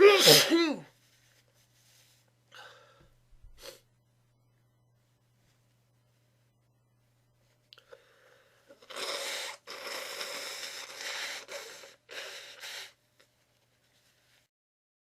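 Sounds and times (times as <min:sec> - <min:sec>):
nose blowing into tissue: 0:08.7 - 0:13.0.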